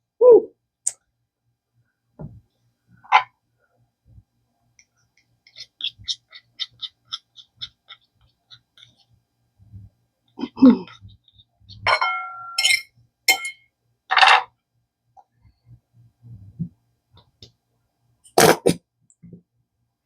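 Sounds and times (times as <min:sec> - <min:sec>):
utensils clinking: 0:11.9 - 0:13.6.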